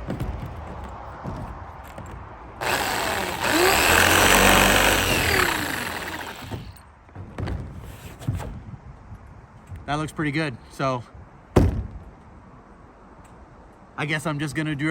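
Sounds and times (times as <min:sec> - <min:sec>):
jigsaw cutting: 0:02.6 - 0:06.8.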